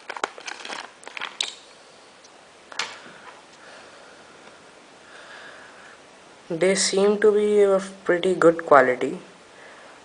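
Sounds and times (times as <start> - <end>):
packaging crinkling: 0.0 - 1.7.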